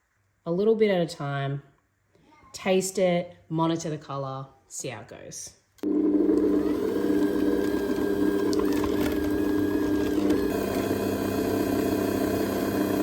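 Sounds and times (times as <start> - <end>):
stand mixer motor hum and whine: 5.8 - 13.0.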